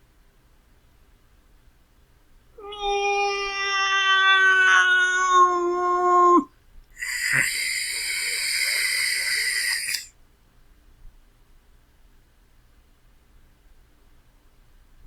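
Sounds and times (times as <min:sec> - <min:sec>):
cat meowing: 0:02.6 - 0:07.8
cat hissing: 0:02.6 - 0:10.1.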